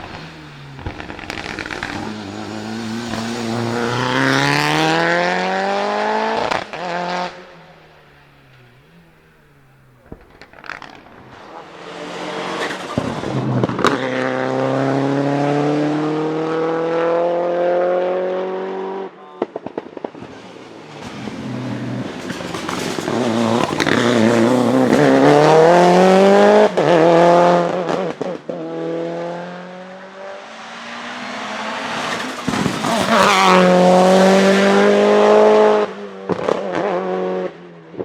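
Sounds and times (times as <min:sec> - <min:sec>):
exhaust pops and bangs: 0:00.0 - 0:05.2, 0:06.4 - 0:11.6, 0:20.9 - 0:28.5, 0:31.7 - 0:35.3
engine at full throttle: 0:00.0 - 0:19.1, 0:21.0 - 0:37.2.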